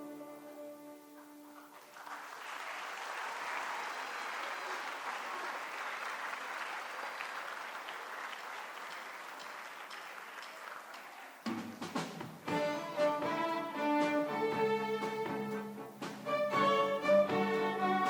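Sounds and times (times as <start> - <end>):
audience applause: 1.6 - 11.6
music piece ending: 12.5 - 18.0.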